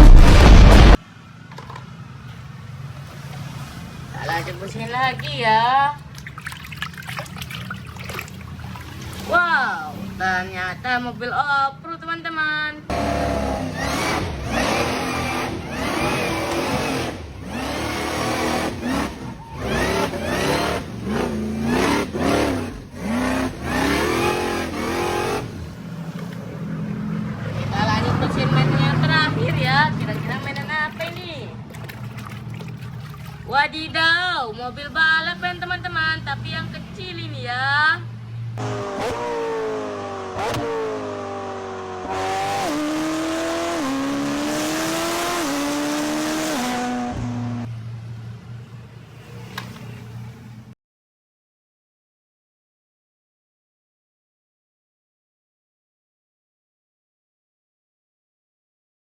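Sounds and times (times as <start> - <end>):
car engine revving: 0.0 - 1.0, 12.9 - 30.2, 38.6 - 47.7
rushing noise: 0.0 - 1.0.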